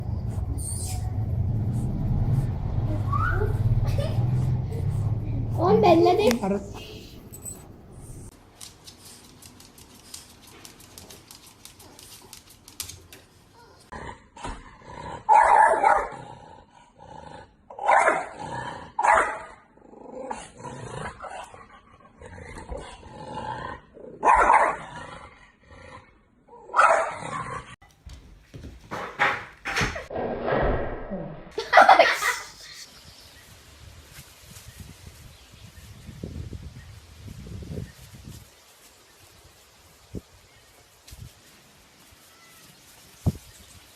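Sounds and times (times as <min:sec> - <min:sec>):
dog barking and growling: 0:13.6 - 0:27.8.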